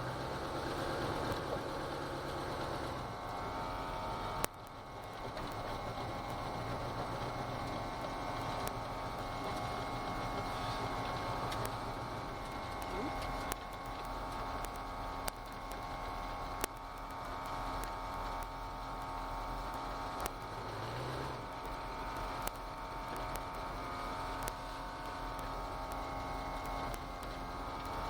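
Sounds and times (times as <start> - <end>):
car engine running: 0.0 - 28.0.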